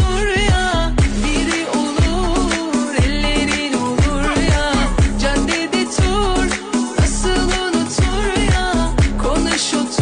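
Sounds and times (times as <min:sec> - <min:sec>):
pop music with beat and vocals: 0:00.0 - 0:10.0.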